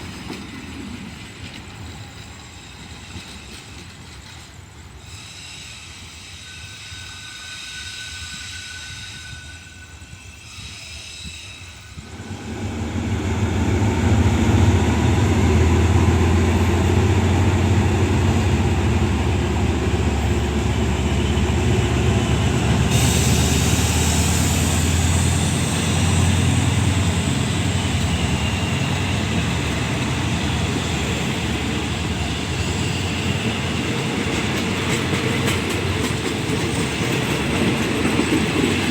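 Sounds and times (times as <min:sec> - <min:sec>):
wheels hissing on rail: 0:00.0 - 0:38.9
diesel train engine rumble: 0:12.0 - 0:38.9.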